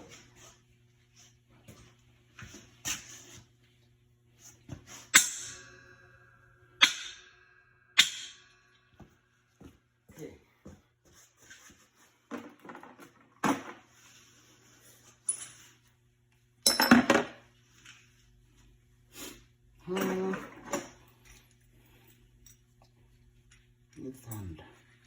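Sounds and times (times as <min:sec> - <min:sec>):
metal tools clinking: 0:15.2 - 0:15.8.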